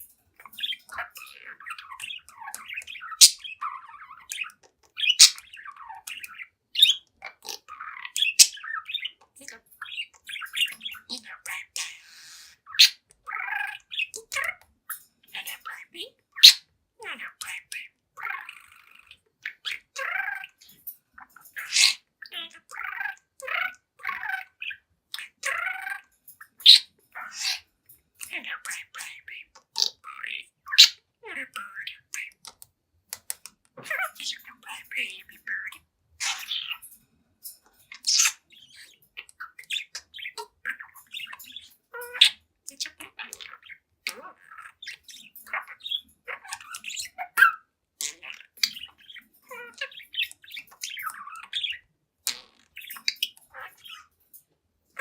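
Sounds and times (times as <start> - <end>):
budgerigar warbling and chirping: 0.4 - 36.9, 37.9 - 54.2
budgerigar squawks: 2.6 - 4.4, 21.6 - 23.1.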